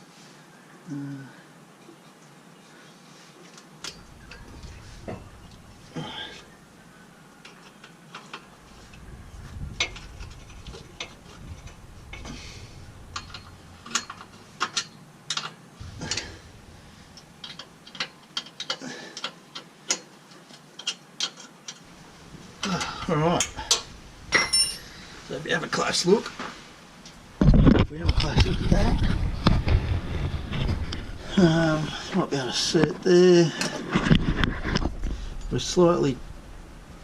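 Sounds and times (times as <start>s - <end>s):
metal clinks and knocks: 3.8s - 6.4s, 7.5s - 18.8s, 22.6s - 24.9s.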